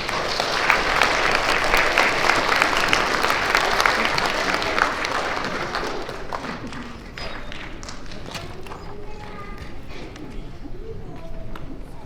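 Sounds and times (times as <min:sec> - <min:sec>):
audience applauding: 0:00.0 - 0:10.4.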